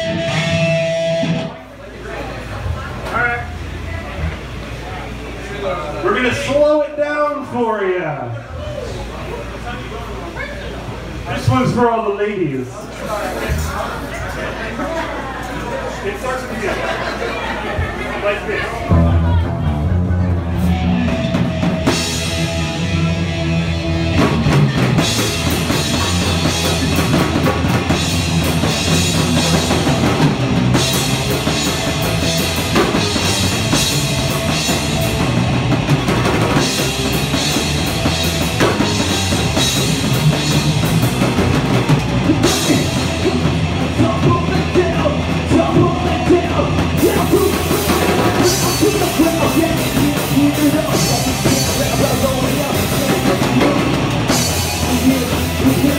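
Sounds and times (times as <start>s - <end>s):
drum kit and cymbals: 0.0s - 1.6s, 19.7s - 55.9s
live rock band playing: 0.0s - 1.7s, 18.8s - 55.9s.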